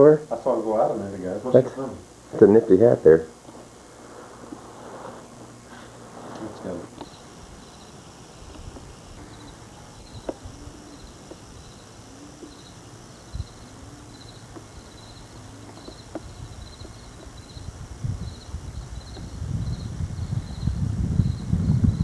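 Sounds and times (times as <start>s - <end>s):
insects chirping: 0.0s - 22.0s
low wind rumble: 13.1s - 22.0s.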